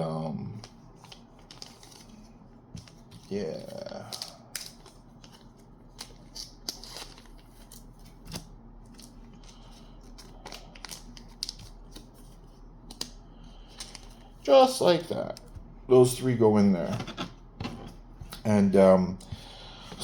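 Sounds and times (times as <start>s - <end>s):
plastic rustling: 0.6s - 15.6s.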